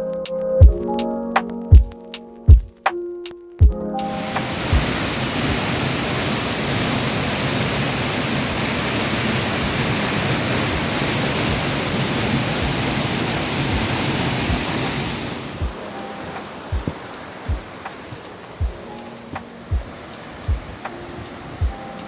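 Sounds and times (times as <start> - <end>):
waterfall rushing: 4.0 - 22.0
short low thuds: 19.4 - 20.8.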